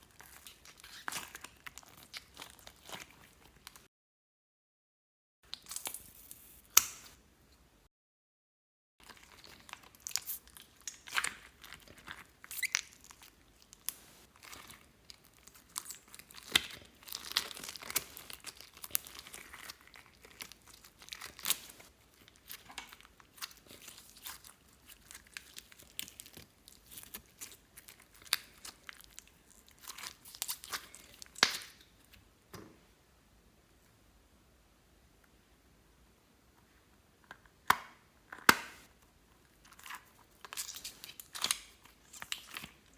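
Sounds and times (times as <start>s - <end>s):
sticky slime crackles and pops: 9.0s - 32.0s, 39.7s - 42.9s.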